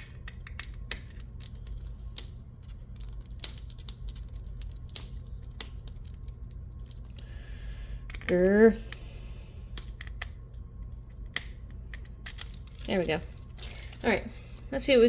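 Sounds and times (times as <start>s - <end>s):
steady low hum: 0.0s - 15.0s
plastic wrapper crackling: 12.5s - 14.1s.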